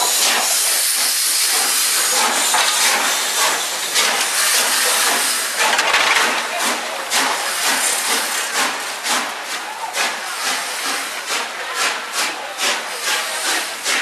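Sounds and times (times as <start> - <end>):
wheels clicking over rail joints: 2.1 - 9.4.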